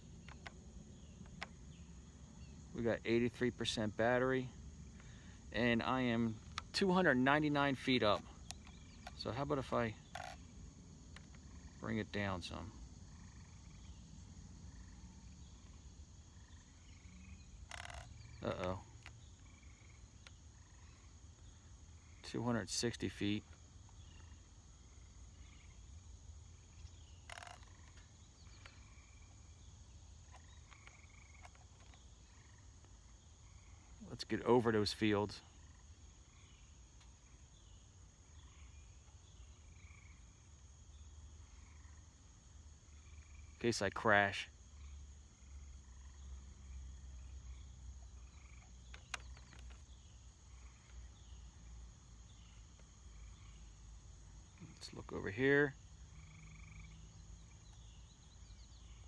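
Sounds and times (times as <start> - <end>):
insect chirps: 0.0 - 59.0
insect trill: 0.0 - 59.0
rustle: 0.0 - 59.0.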